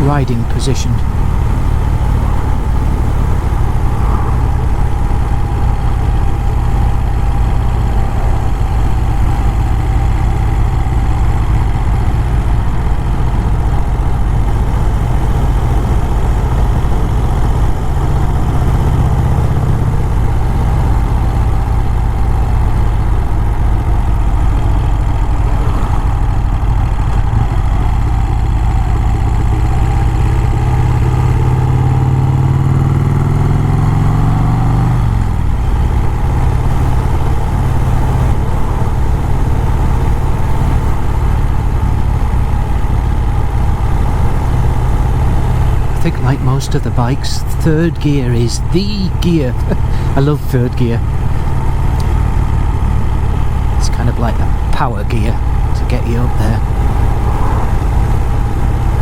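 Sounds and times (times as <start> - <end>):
motorcycle engine rumbling: 0.0 - 59.0.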